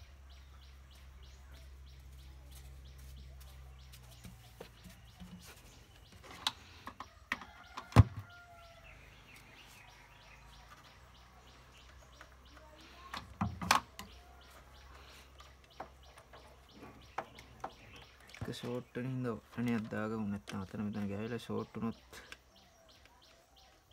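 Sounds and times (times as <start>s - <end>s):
clicks and knocks handling wires: 13.1s - 14.2s.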